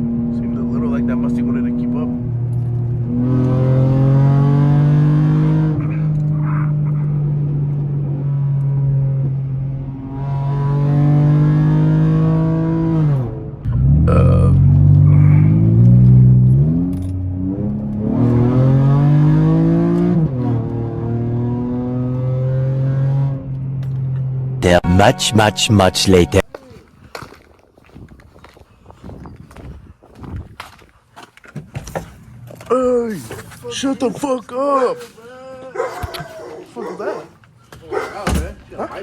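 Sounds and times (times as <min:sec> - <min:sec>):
car engine accelerating: 0:00.0 - 0:26.5.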